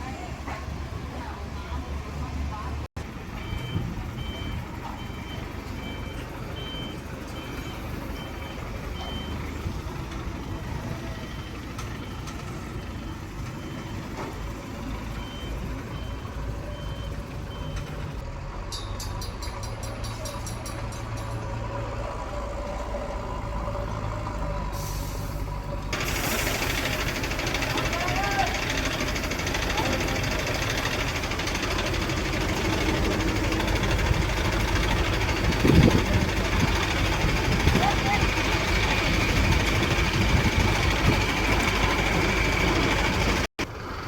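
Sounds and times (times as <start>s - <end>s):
engine running: 0.0s - 44.0s
vehicle warning beeper: 3.3s - 18.2s.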